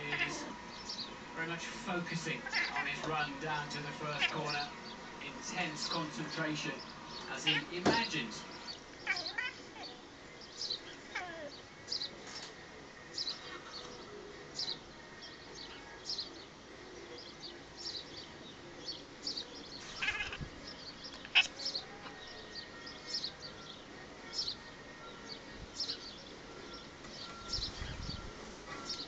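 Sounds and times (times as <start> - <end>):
cat calling: 0.0 - 1.0, 2.3 - 5.0, 7.2 - 8.4, 9.0 - 10.0, 10.7 - 11.6, 19.8 - 23.6
small birds chirping: 0.0 - 29.0.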